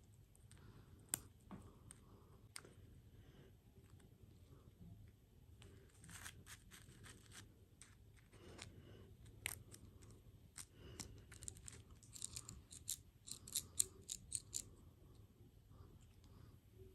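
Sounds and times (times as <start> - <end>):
crisp clicks of eating candy: 6.0 - 14.7.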